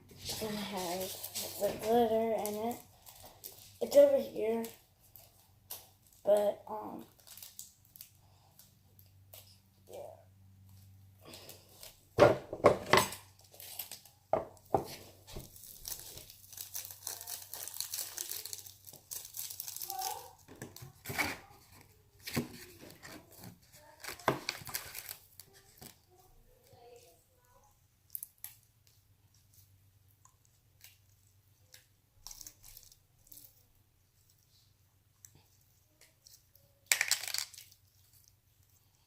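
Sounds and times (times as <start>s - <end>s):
packaging crinkling and tearing: 7.1s - 8.4s, 13.1s - 14.3s, 15.2s - 26.0s.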